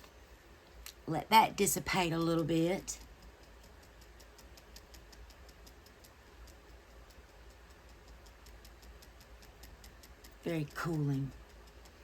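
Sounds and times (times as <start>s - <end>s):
faint regular ticking: 0.0s - 12.0s.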